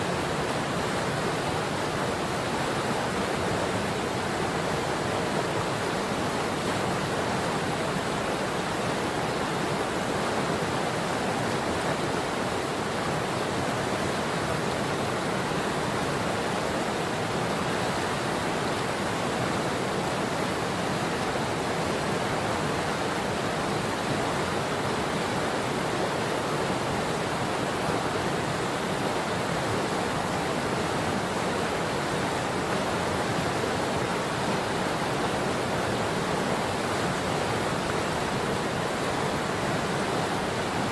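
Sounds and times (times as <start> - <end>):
river water rushing: 0.0 - 40.9.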